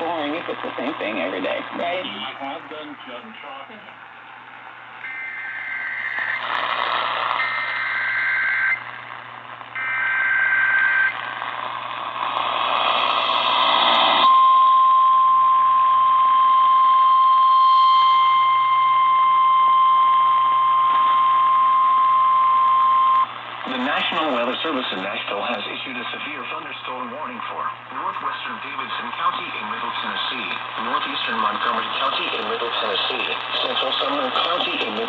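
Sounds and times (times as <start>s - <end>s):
radio static: 0.0s - 4.1s, 5.0s - 14.4s, 17.6s - 35.0s
steady warning alarm tone: 5.0s - 6.4s, 7.4s - 8.8s, 9.8s - 11.2s
warbling digital data tones: 5.1s - 8.9s.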